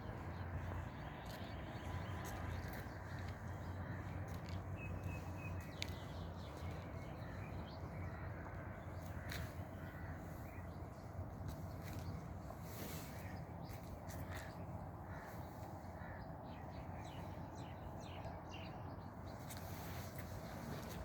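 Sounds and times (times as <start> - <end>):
bird calls: 0.0 - 21.0.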